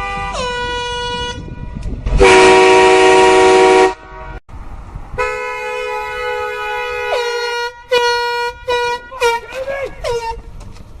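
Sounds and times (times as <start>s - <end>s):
air horn blasts: 0.0s - 4.4s, 5.2s - 10.5s.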